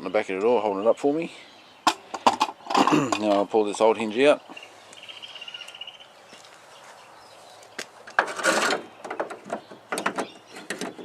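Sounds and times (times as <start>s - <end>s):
metal clicks and knocks: 8.1s - 11.0s.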